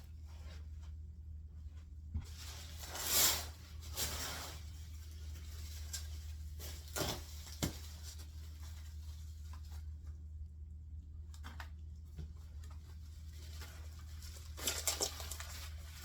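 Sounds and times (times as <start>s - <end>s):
steady low hum: 0.0s - 16.0s
paper rustling and crinkling: 2.2s - 10.2s, 11.3s - 16.0s.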